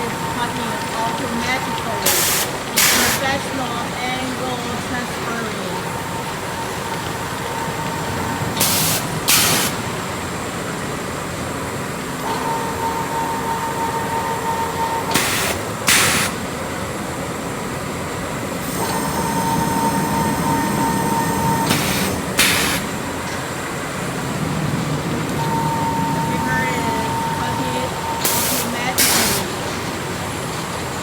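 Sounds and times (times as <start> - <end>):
machinery running: 0.0 - 31.0
loud hissing bursts: 2.0 - 3.7, 8.6 - 10.1, 15.1 - 16.7, 19.2 - 24.3, 26.4 - 31.0
faint steady tone: 25.1 - 29.7.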